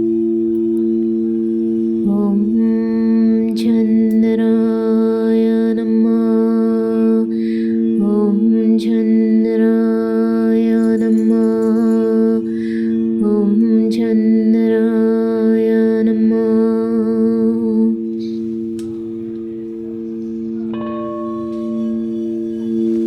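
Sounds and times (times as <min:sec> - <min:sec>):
drone of held tones: 0:00.0 - 0:23.0
person singing wordless chant: 0:07.9 - 0:22.1.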